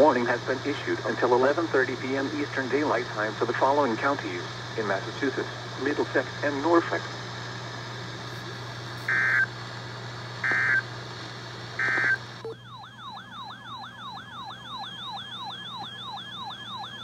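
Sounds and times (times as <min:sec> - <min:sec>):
buzzing data bursts: 0:09.0 - 0:09.5, 0:10.4 - 0:10.8, 0:11.8 - 0:17.0
electronic siren tone sweeping down: 0:09.1 - 0:09.5, 0:10.4 - 0:10.8, 0:11.8 - 0:17.0.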